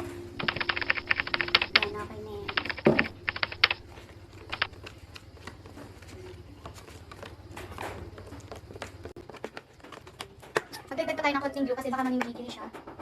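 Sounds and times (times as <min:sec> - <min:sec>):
low hum: 0:00.0 - 0:09.2
utensils clicking and scraping: 0:00.4 - 0:10.9.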